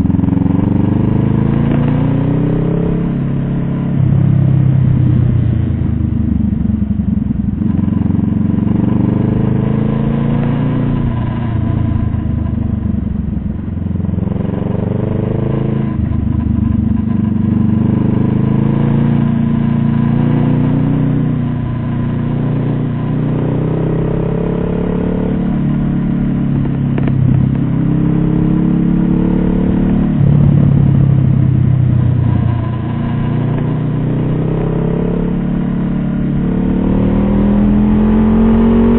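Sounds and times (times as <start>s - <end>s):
vehicle engine accelerating: 0.0s - 38.9s.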